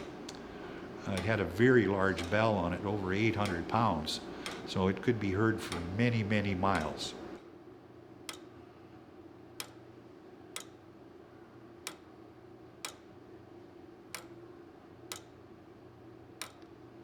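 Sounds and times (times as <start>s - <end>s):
clock ticking: 1.1s - 7.1s.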